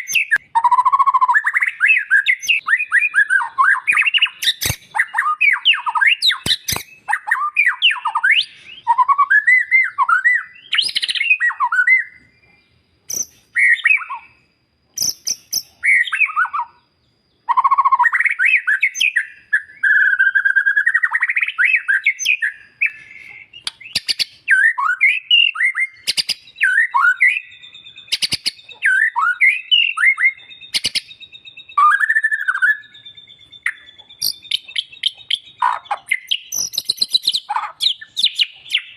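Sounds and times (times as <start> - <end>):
bird singing whistled song: 0.0 - 38.9
sharp clicks: 6.3 - 7.0, 23.6 - 24.3.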